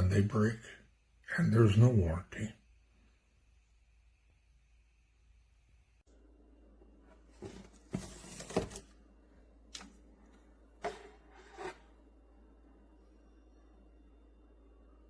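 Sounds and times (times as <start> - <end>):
scraping and rustling handling: 7.1 - 9.0.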